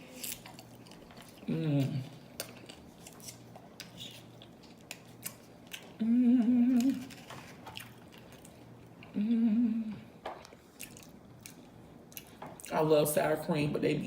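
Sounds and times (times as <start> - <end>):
woman humming with pleasure: 1.5 - 2.2, 6.0 - 7.1, 9.1 - 10.1.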